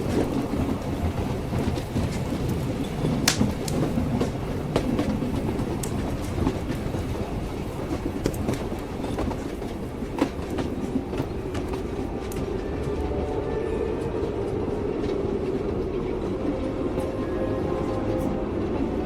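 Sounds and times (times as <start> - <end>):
wheels clicking over rail joints: 0.0 - 13.0
train rumbling on rails: 0.0 - 19.0.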